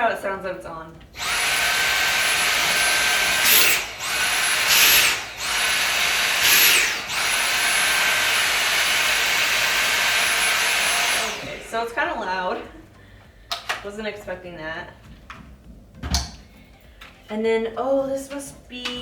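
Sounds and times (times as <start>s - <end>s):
vacuum motor whine: 1.1s - 11.8s.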